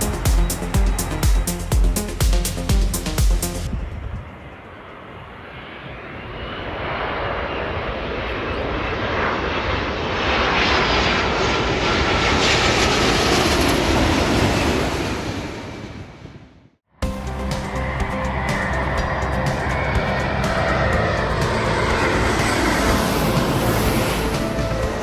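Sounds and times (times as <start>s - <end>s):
airliner passing overhead: 3.7s - 25.0s
faint engine whine: 17.0s - 25.0s.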